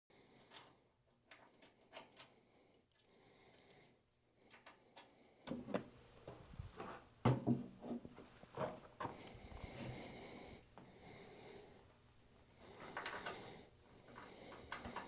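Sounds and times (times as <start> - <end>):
knocks and thuds on workbench: 7.2 - 8.0.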